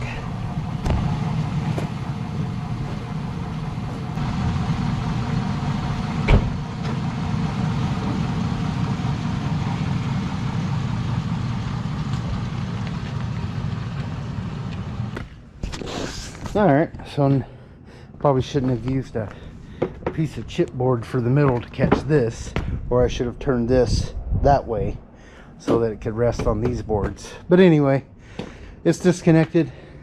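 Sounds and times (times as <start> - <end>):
truck engine idling: 0.0 - 15.6.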